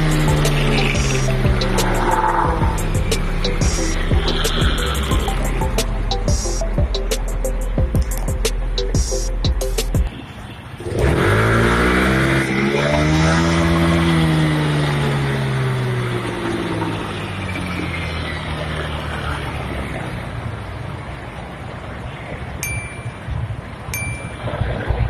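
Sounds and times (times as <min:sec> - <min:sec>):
scooter engine revving: 0:00.0 - 0:06.6, 0:10.8 - 0:19.8.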